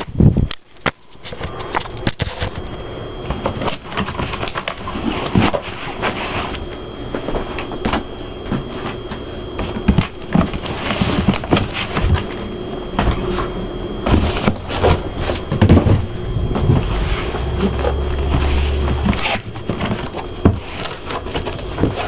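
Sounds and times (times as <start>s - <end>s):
cardboard box rustling and scraping: 3.3s - 6.6s, 8.0s - 22.0s.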